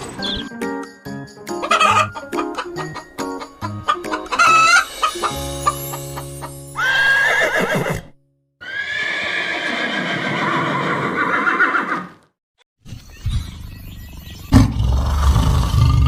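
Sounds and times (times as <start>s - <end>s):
sustained music notes: 0.1s - 6.8s
horse whinnying: 6.8s - 12.2s.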